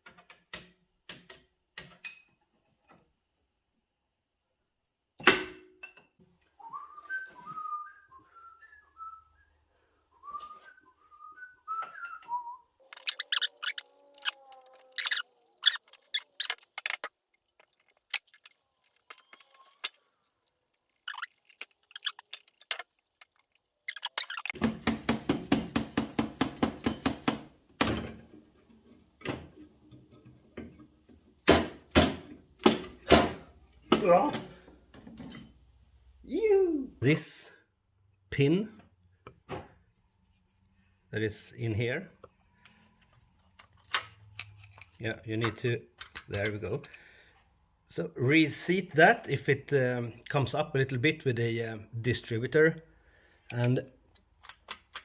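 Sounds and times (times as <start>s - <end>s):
man whistling a tune: 6.6s - 12.7s
hand tools clicking and clattering: 12.8s - 20.1s.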